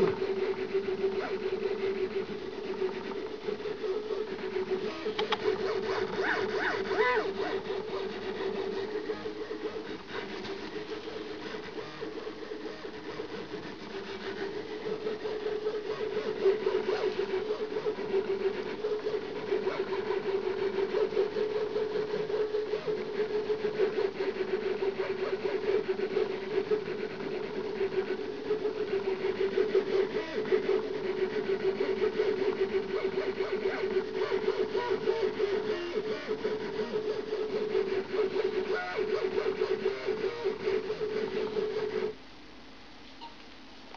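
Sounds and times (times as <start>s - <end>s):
stepper motors whining: 0.0s - 24.2s.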